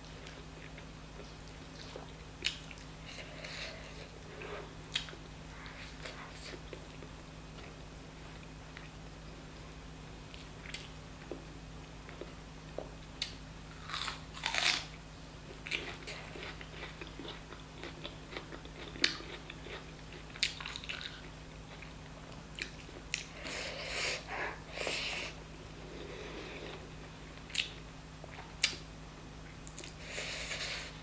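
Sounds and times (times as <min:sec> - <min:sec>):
person chewing food: 0:10.3 - 0:11.4, 0:12.1 - 0:14.9, 0:15.5 - 0:26.9.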